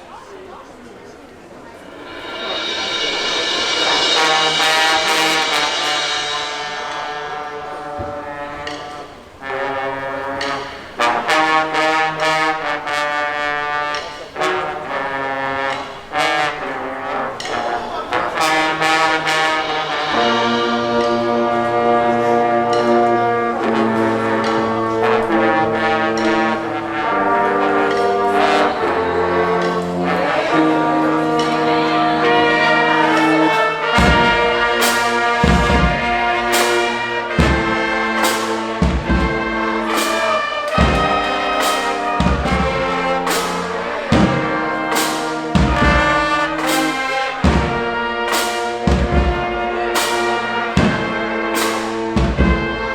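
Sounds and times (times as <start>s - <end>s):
brass sustained chords: 1.7s - 52.9s
heavy drum hits: 1.8s - 9.7s, 34.0s - 36.8s.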